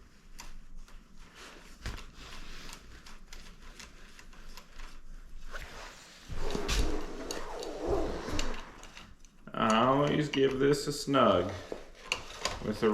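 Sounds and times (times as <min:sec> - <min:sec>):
metal rubbing and scraping: 0:05.5 - 0:09.1.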